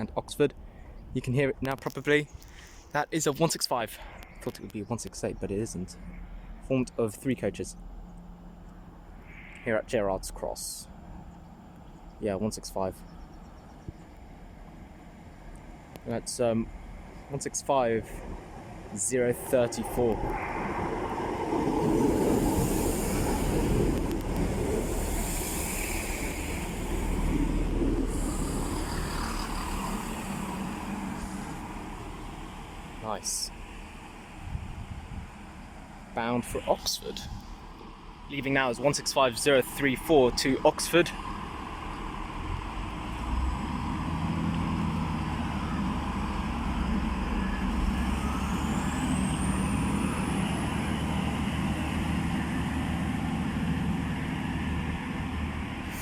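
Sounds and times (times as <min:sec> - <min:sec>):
diesel train engines running: 0:02.1 - 0:56.0
high whine: 0:19.0 - 0:56.0.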